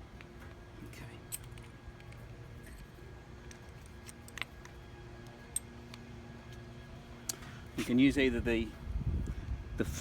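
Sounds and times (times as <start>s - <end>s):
faint steady hum: 0.0s - 10.0s
metal hardware clicking: 1.2s - 4.8s.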